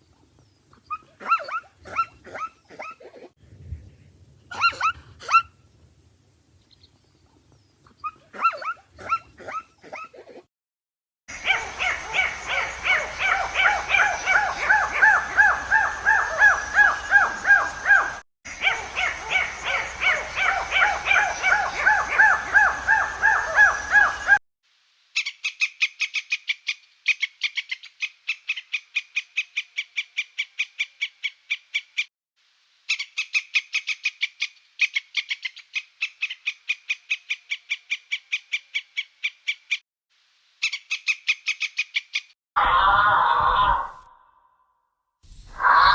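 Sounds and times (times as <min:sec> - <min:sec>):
animal calling: 0:00.8 - 0:03.3, 0:04.5 - 0:05.6, 0:08.0 - 0:10.4, 0:11.3 - 0:24.4.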